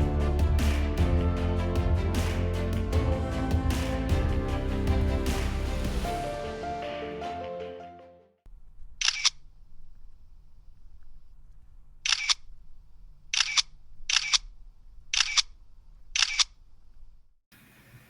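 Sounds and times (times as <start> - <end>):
camera shutter clicks: 9.0 - 9.4, 12.1 - 12.4, 13.3 - 14.5, 15.2 - 15.5, 16.2 - 16.6.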